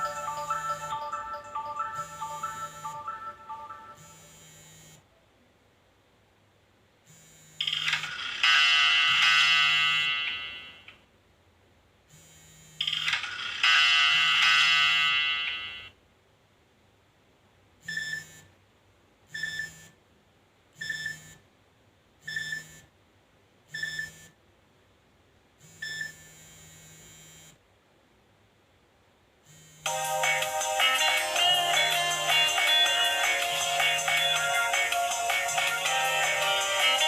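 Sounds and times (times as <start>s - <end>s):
melodic ringtone: 0.0s - 4.2s, 29.9s - 37.0s
phone alert tones: 0.0s - 4.2s, 29.9s - 37.0s.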